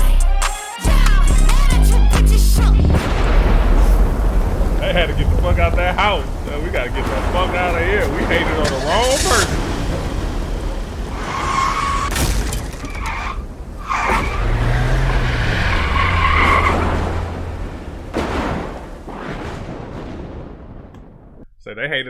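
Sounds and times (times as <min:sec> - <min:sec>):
engine drone: 0:01.4 - 0:19.0
car tyres skidding and squealing: 0:03.6 - 0:19.2.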